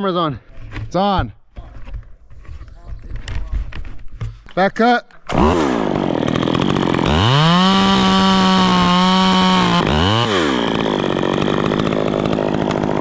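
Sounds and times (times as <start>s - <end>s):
chainsaw revving: 5.3s - 13.0s.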